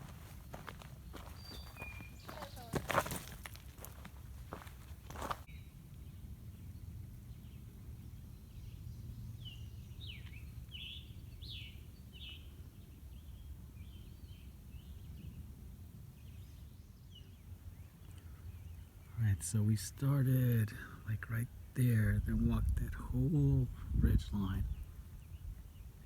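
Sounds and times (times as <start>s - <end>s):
bird singing high chirps: 1.1s - 3.1s
steady low rumble: 19.2s - 26.0s.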